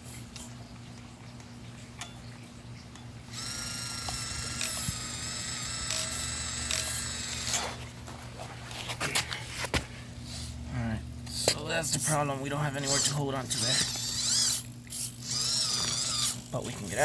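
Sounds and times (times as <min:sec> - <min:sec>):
toy motor and gears whining: 0:03.2 - 0:07.8, 0:11.3 - 0:17.0.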